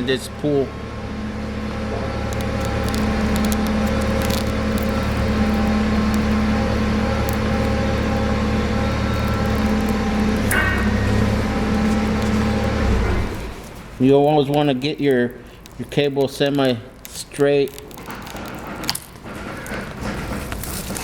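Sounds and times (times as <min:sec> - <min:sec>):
steady motor hum with tones: 0:00.0 - 0:14.0
faint clicks and crackles: 0:02.1 - 0:21.0.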